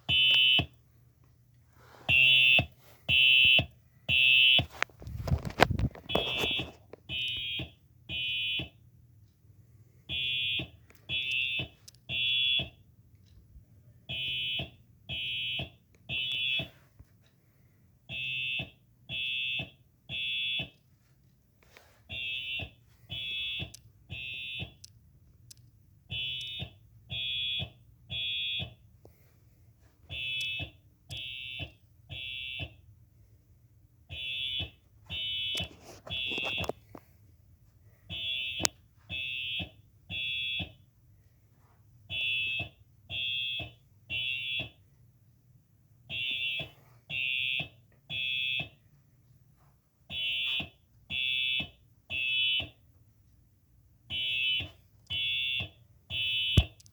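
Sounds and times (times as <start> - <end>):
fire alarm horn blasts: 0.0 - 0.8, 2.1 - 8.8, 10.1 - 12.8, 14.1 - 16.8, 18.1 - 20.7, 22.1 - 24.8, 26.1 - 28.8, 30.0 - 32.8, 34.1 - 37.0, 38.0 - 40.8, 42.1 - 44.8, 46.1 - 48.8, 50.1 - 52.8, 54.0 - 56.8.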